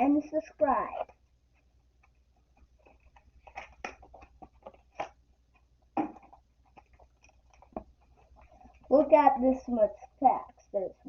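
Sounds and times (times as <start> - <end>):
foil card packs crinkling: 2.6 - 5.2.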